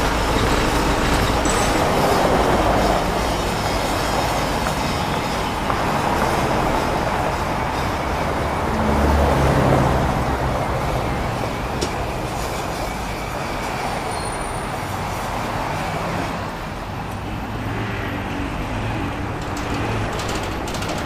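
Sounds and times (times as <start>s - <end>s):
heavy machinery rumble: 0.0s - 13.3s, 18.5s - 21.0s.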